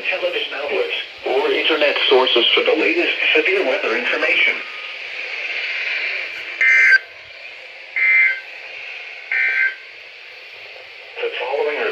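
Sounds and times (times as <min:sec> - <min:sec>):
radio hiss: 0:00.0 - 0:11.9
data tone bursts: 0:06.6 - 0:07.0, 0:08.0 - 0:08.5, 0:09.3 - 0:09.8.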